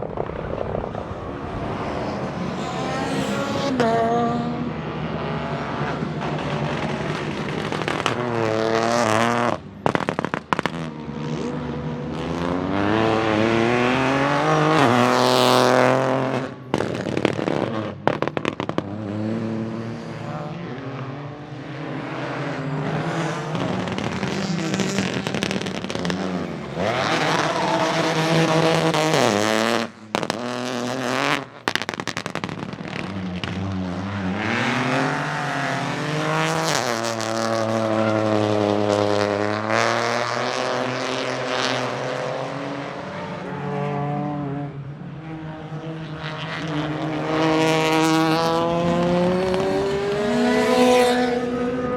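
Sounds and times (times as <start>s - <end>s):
exhaust crackles and pops: 0.0s - 3.9s, 6.1s - 11.6s, 15.8s - 19.1s, 23.5s - 35.2s
car engine revving hard: 1.0s - 17.9s, 21.8s - 32.2s, 32.9s - 44.6s, 45.8s - 51.9s.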